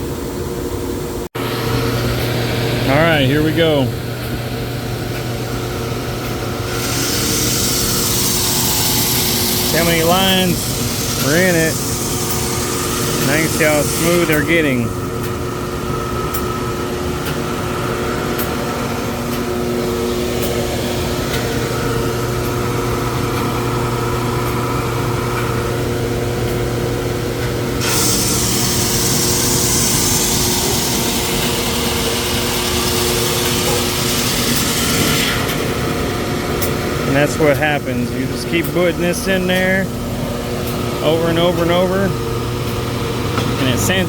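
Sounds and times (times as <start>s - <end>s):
drum sander motor hum: 1.4s - 44.0s
gritty sanding hiss: 6.8s - 14.8s.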